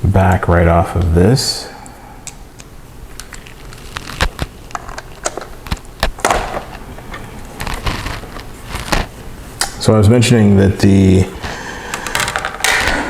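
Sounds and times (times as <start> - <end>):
plastic cover clicks and snaps: 3.2 - 6.8
plastic scrape: 3.4 - 5.8, 6.4 - 9.1.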